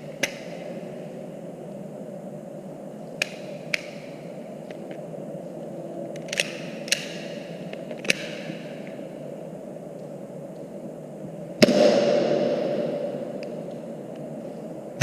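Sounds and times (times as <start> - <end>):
low background hum: 0.0 - 15.0
faint clicks: 3.1 - 4.0
airsoft pistol shots: 11.6 - 13.3.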